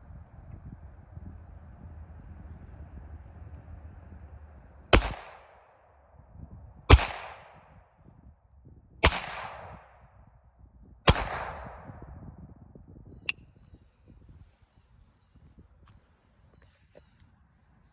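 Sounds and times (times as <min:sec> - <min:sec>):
pistol shots: 0:05.0 - 0:05.7, 0:06.9 - 0:07.7, 0:09.0 - 0:10.1, 0:11.1 - 0:12.0
sharp click: 0:13.3 - 0:13.5.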